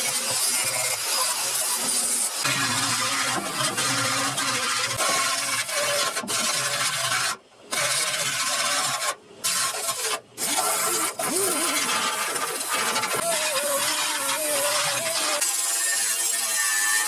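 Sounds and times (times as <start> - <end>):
power grinder grinding metal: 0.0 - 17.0.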